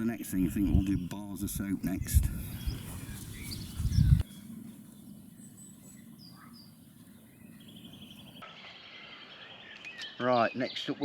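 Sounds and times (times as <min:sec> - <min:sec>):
open field ambience: 0:00.0 - 0:11.0
short bird chirps: 0:02.6 - 0:10.7.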